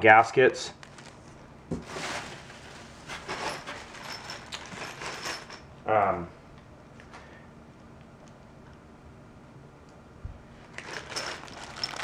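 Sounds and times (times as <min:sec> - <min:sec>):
rustling and scraping handling noise: 0:00.7 - 0:05.6, 0:10.6 - 0:12.0.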